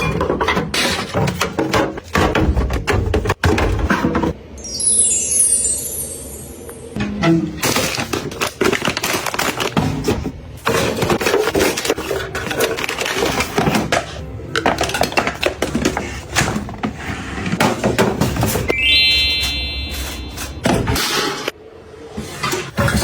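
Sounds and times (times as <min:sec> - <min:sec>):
kitchen items clattering: 0:00.0 - 0:04.4, 0:07.2 - 0:18.7.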